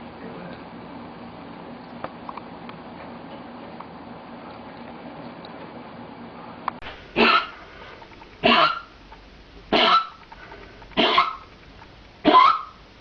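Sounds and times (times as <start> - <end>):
dog coughing: 7.2 - 7.6, 8.4 - 8.9, 9.7 - 10.2, 11.0 - 11.4, 12.2 - 12.7.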